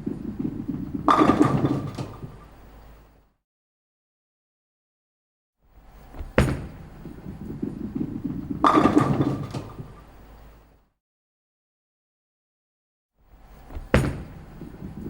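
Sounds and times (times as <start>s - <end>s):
sharp knock: 6.4s - 6.8s, 14.0s - 14.4s.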